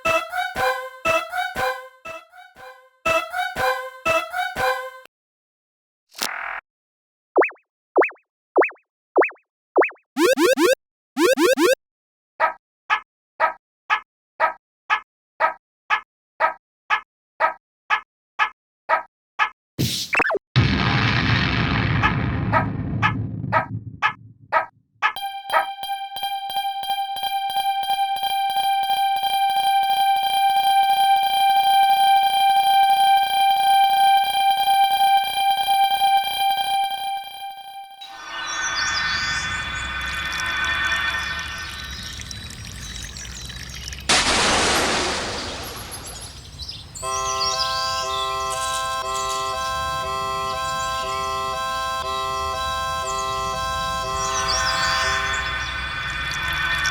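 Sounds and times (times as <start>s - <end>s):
railroad crossing alarm ringing: 25.2s - 38.0s, 47.0s - 55.9s.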